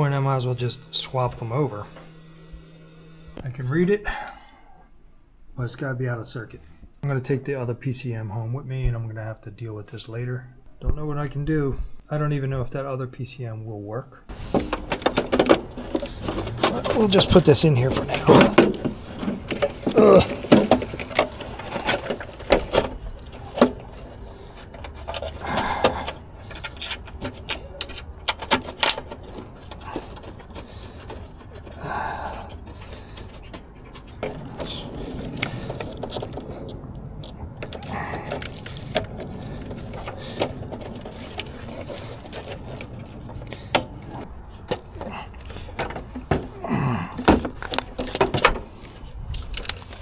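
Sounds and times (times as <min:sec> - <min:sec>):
parts and tools clicking: 0:14.3 - 0:50.0.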